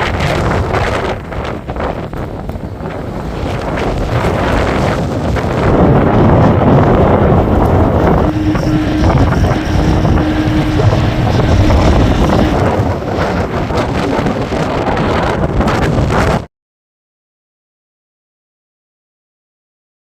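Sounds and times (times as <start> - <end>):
wind buffeting microphone: 0.0 - 16.5.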